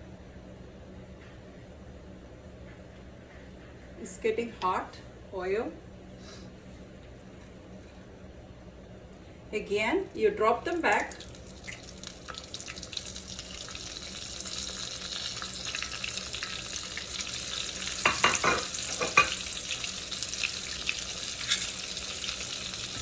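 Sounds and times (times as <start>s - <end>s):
chicken nuggets deep-frying in oil: 10.6s - 23.0s.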